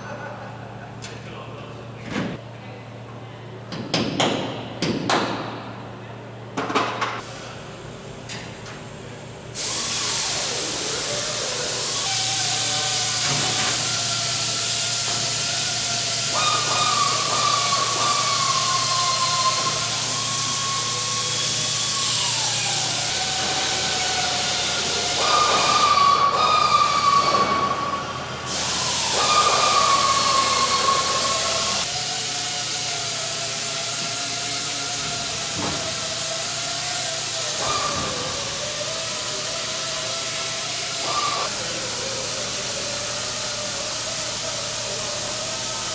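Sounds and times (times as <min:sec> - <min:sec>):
air-powered equipment hissing: 0:07.2 - 0:45.9.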